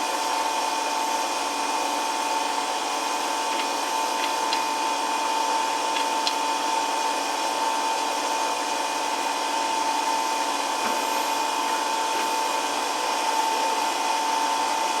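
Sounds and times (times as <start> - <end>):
woodworking machine motor whine: 0.0 - 15.0.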